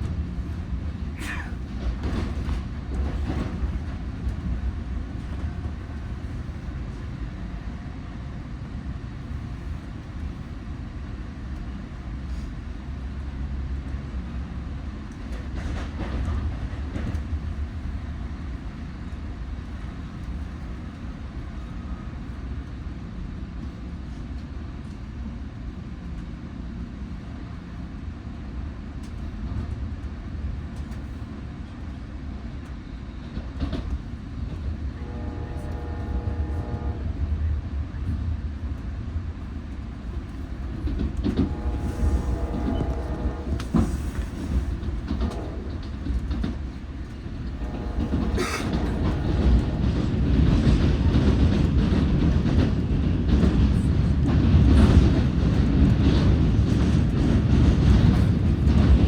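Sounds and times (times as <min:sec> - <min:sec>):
train knocks: 0:00.0 - 0:06.4, 0:15.2 - 0:17.8, 0:33.2 - 0:37.1, 0:39.8 - 0:59.0
train rumbling past: 0:00.0 - 0:59.0.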